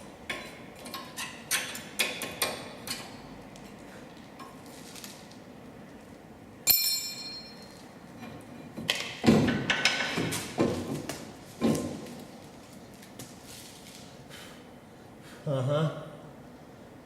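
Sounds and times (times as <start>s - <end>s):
sharp metal clink: 6.7s - 7.8s
metal knocks and clatters: 8.2s - 12.1s.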